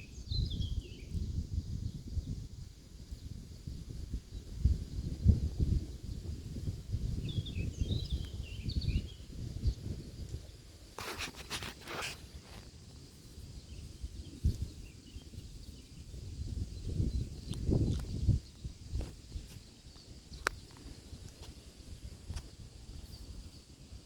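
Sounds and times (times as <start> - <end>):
wind rumble on microphone: 0.0 - 24.0
harsh rustling noise: 11.0 - 12.7.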